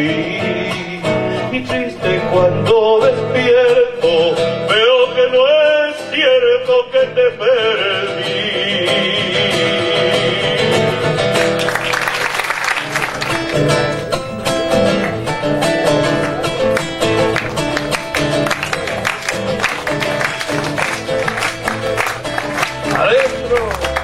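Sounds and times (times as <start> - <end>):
acoustic guitars strumming: 0.0 - 24.0
bass line: 13.0 - 24.0.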